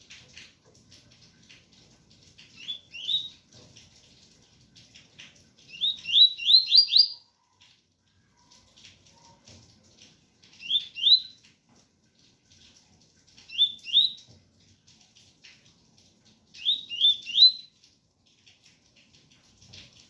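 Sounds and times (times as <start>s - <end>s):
faint rain patter: 0.0s - 20.0s.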